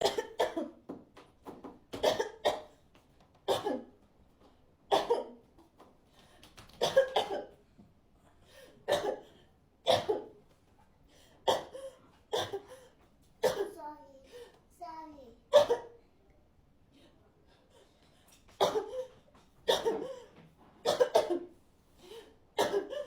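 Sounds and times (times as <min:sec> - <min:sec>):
adult coughing: 0:00.0 - 0:00.8, 0:02.0 - 0:02.7, 0:03.5 - 0:03.9, 0:04.9 - 0:05.4, 0:06.8 - 0:07.6, 0:08.9 - 0:10.4, 0:11.5 - 0:13.8, 0:15.5 - 0:16.0, 0:18.6 - 0:21.5, 0:22.1 - 0:23.0.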